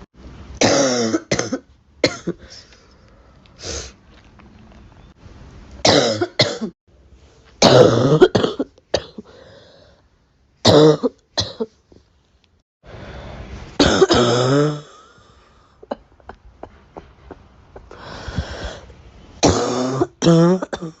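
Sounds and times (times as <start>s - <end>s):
person coughing: 0.6s - 2.6s, 5.8s - 6.7s, 7.6s - 9.3s, 13.8s - 15.2s, 19.4s - 21.0s
noisy breath in: 9.2s - 10.1s, 12.8s - 13.7s, 17.9s - 19.2s.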